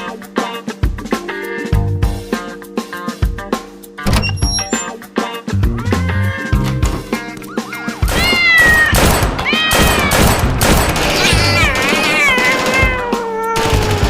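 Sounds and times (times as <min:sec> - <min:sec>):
background music: 0:00.0 - 0:14.0
cat meowing: 0:05.8 - 0:10.4, 0:11.0 - 0:13.8.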